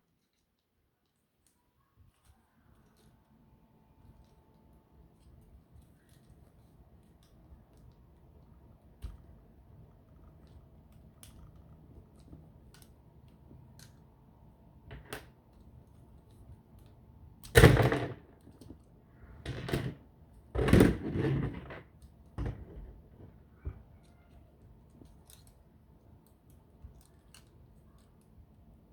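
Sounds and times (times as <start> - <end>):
plastic parts clicking: 20.6 - 25.6, 26.2 - 28.3.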